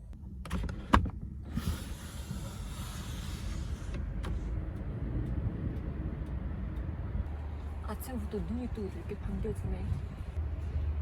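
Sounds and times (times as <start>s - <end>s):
low rumble of wind: 0.0s - 11.0s
air hiss and door moving: 1.5s - 4.5s.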